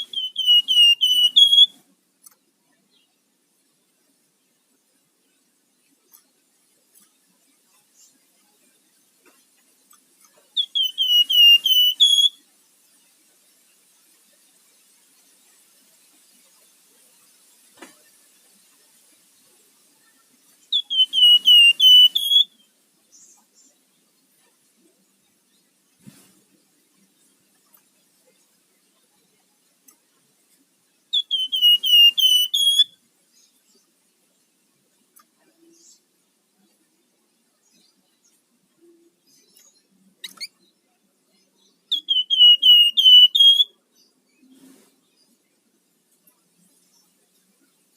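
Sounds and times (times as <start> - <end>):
bird whistling notes: 0.0 - 1.7, 10.6 - 12.4, 20.8 - 22.6, 31.2 - 32.9, 41.9 - 43.7
faint click: 2.2 - 2.5.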